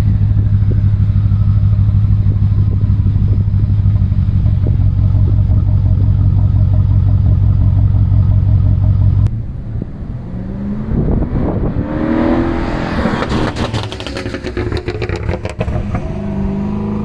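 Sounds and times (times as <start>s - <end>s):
exhaust crackles: 0.0s - 9.3s
car engine revving: 0.0s - 17.0s.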